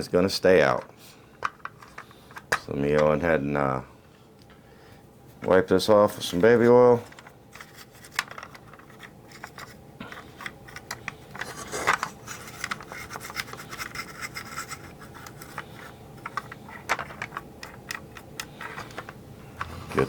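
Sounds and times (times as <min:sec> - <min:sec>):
scratchy rubbing of plastic toy: 0:07.5 - 0:20.0.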